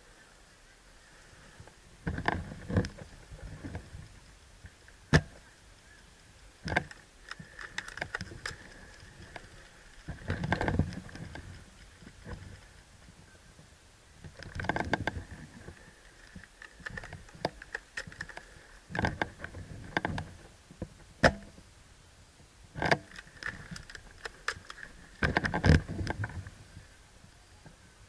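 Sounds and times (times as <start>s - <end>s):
crunching and rustling in dry brush: 1.0s - 21.0s.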